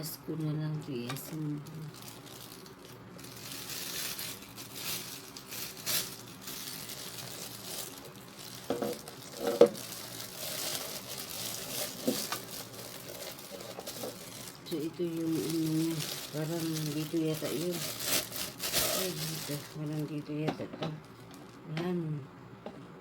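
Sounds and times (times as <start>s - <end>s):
packaging crinkling: 0.9s - 21.7s.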